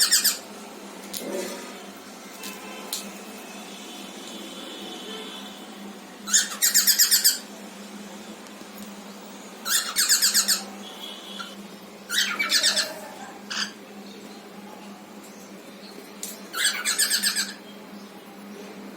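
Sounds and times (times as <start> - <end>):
cockatiels chattering calls: 0.0 - 0.5, 6.3 - 7.5, 9.6 - 10.7, 11.4 - 13.8, 16.5 - 17.6.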